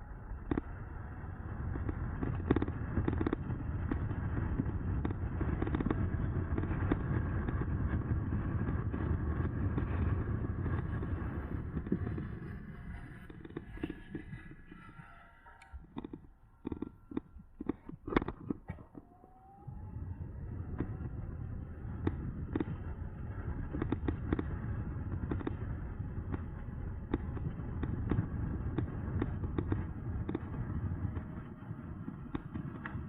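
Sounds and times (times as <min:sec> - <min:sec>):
wind and road rumble: 0:00.0 - 0:33.0
rising motor whine: 0:06.4 - 0:26.4.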